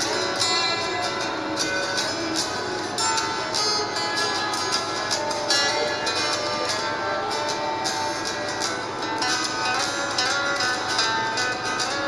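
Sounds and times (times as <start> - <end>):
acoustic guitar strumming: 0.0 - 12.0.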